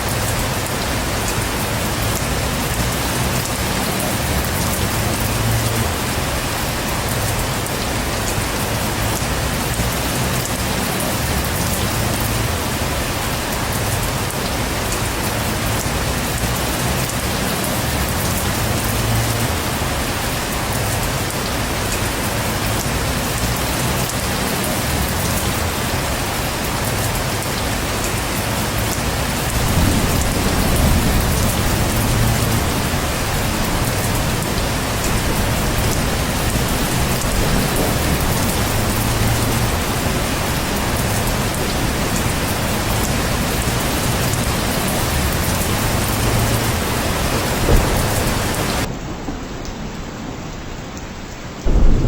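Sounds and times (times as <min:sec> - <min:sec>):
heavy rain pouring: 0:00.0 - 0:52.0
low thunder rumbling: 0:28.7 - 0:52.0
loud thunder clap: 0:29.4 - 0:51.0, 0:51.6 - 0:52.0.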